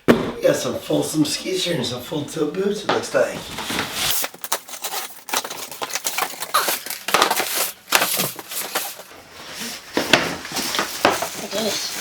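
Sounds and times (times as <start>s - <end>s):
packaging crinkling and tearing: 4.0s - 9.1s.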